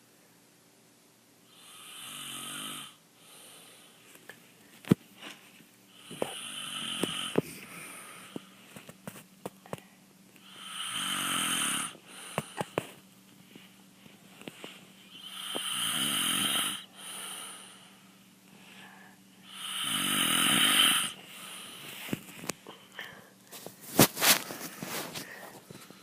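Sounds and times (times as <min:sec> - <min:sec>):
man snoring: 0:01.5 - 0:03.0, 0:06.0 - 0:08.4, 0:10.4 - 0:12.6, 0:15.1 - 0:17.8, 0:19.4 - 0:21.8.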